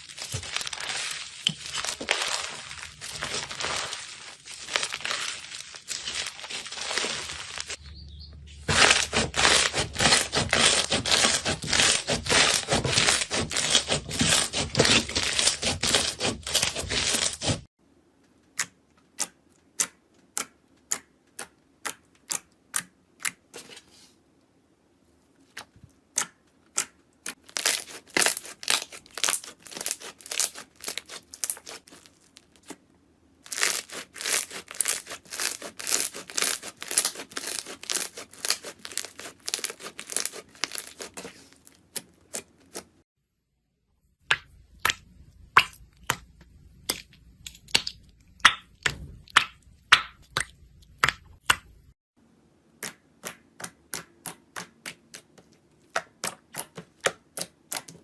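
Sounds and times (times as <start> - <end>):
slime crackling and popping: 0.0 - 7.8, 33.4 - 41.2.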